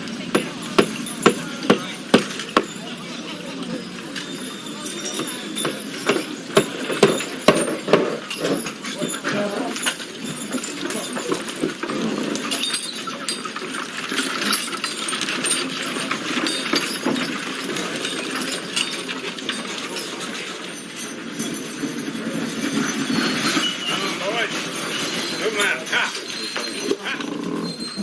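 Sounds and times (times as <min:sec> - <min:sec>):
sharp clicks and clinks: 0:00.0 - 0:28.0
animal sounds: 0:25.3 - 0:28.0.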